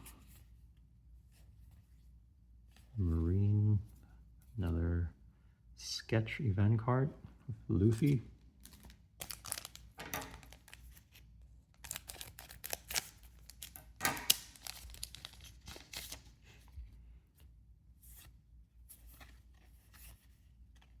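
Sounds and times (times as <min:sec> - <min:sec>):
cards rustling: 0:07.8 - 0:17.0
foil wrapper tearing: 0:08.6 - 0:11.1, 0:11.8 - 0:16.2.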